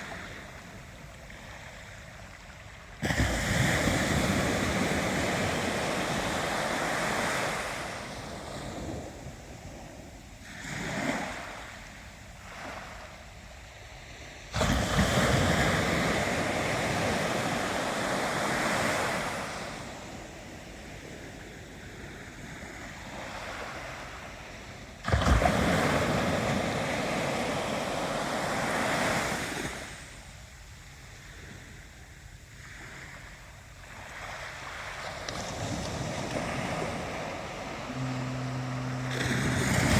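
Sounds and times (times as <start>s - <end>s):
ocean waves crashing: 0.0s - 0.4s, 3.0s - 9.2s, 14.5s - 20.2s, 33.9s - 39.9s
surf washing: 0.0s - 30.4s, 31.2s - 39.9s.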